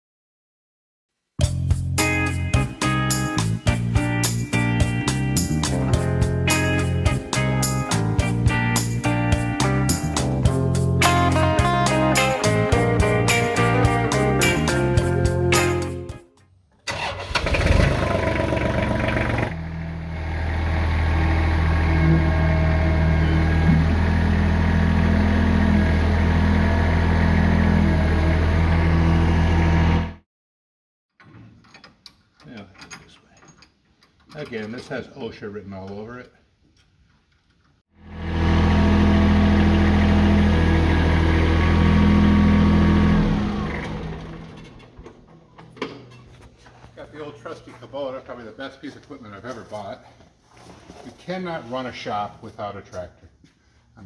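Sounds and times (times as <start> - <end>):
engine cranking and idling: 16.8 - 28.9, 38.2 - 46.2.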